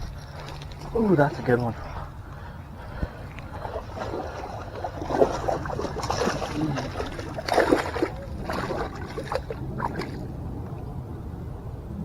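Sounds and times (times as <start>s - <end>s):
fish splashing in water: 3.3s - 10.5s.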